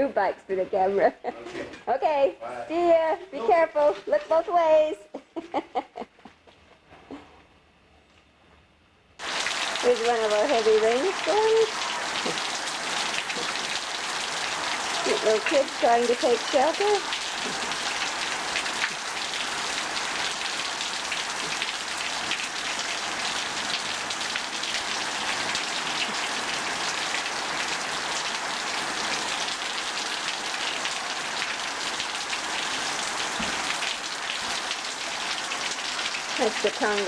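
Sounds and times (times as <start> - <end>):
heavy rain downpour: 9.2 - 37.0.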